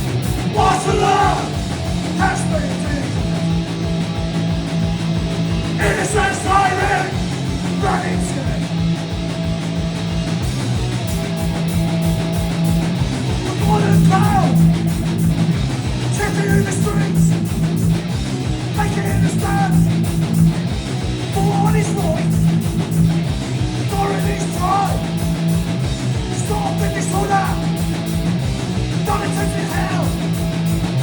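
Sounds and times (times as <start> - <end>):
punk band playing: 0.0 - 31.0
shouted vocals: 0.4 - 3.2, 5.7 - 8.8, 13.5 - 14.9, 16.1 - 17.4, 18.7 - 20.0, 21.3 - 22.4, 23.8 - 25.2, 26.3 - 27.8, 29.0 - 30.4.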